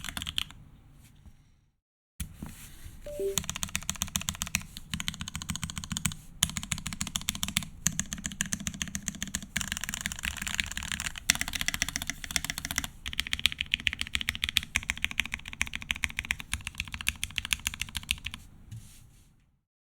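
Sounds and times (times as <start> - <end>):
fast typing on mechanical keyboard: 0.0 - 0.6, 3.5 - 18.4.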